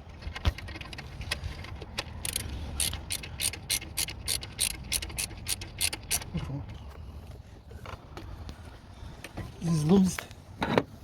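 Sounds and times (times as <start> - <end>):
ratchet wrench clicking: 2.2 - 6.3.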